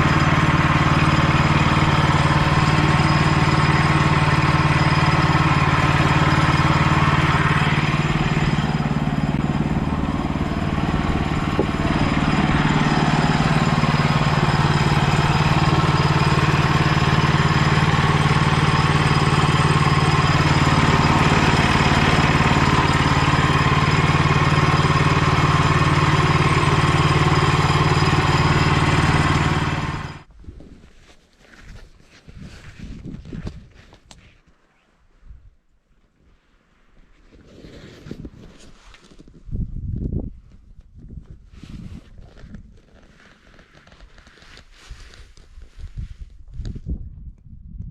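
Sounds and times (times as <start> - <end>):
small engine running: 0.0 - 30.3.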